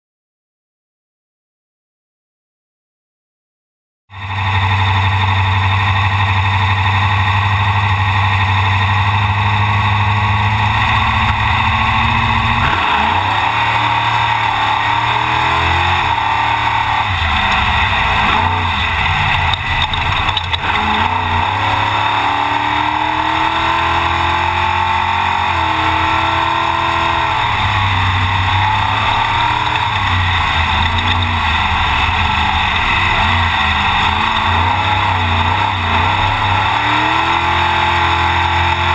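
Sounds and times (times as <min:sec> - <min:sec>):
truck engine revving: 0:04.2 - 0:38.9.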